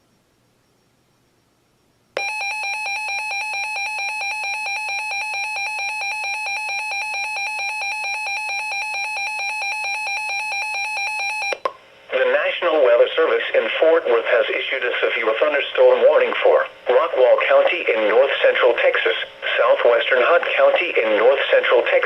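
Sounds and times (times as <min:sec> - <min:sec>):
pulsed electronic alarm beep: 0:02.2 - 0:11.7.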